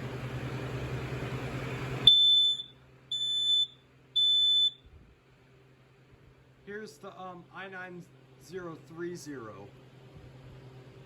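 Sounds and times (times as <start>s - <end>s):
steady hiss with low hum: 0.0s - 11.0s
smoke alarm beeps: 2.0s - 4.8s.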